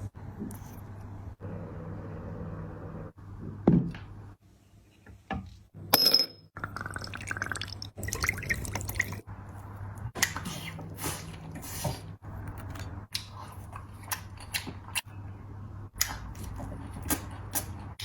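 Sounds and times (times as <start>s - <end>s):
steady low hum: 0.0s - 4.4s
trickling water: 6.6s - 9.2s.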